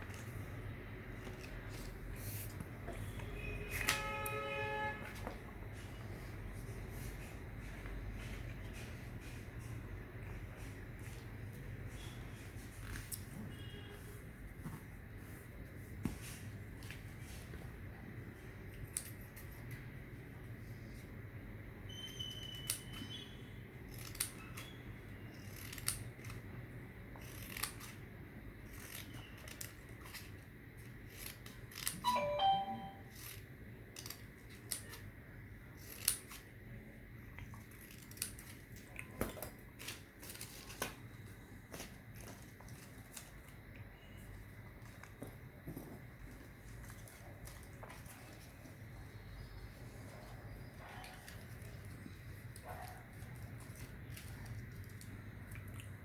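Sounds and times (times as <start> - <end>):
paper being cut and creased: 25.3 - 26.4, 27.2 - 28.0, 28.6 - 30.4.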